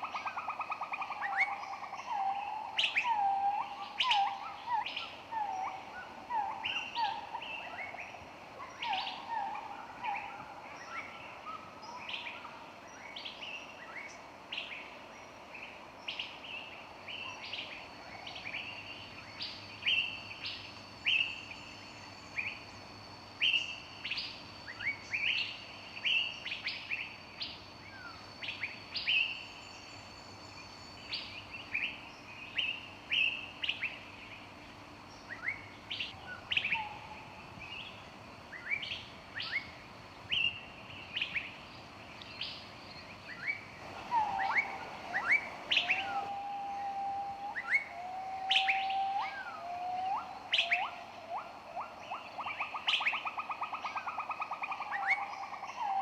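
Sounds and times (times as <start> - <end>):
lower whistled bird call: 0.0 - 14.9, 16.0 - 34.0, 35.2 - 56.0
songbirds chirping: 0.0 - 56.0
thin steady high tone: 43.6 - 52.8.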